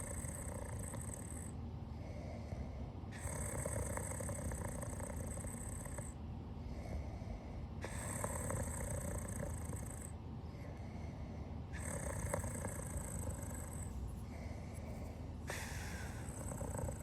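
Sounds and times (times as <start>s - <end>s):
soft rhythmic snoring: 0.0s - 17.0s.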